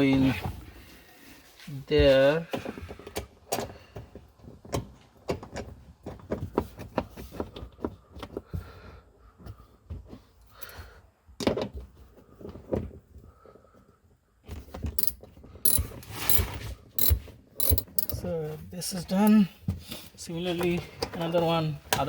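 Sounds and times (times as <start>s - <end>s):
screw clicking into plastic: 15.0s - 18.2s.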